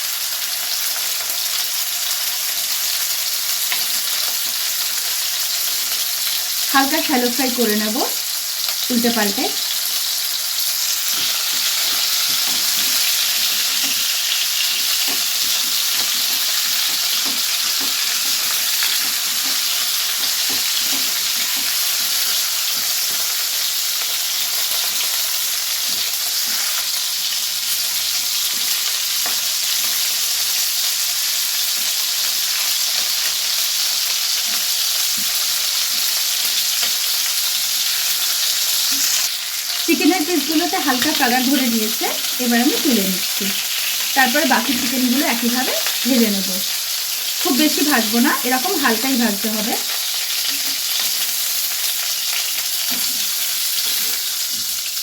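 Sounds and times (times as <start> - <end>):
chicken sizzling in oil: 0.0 - 55.0.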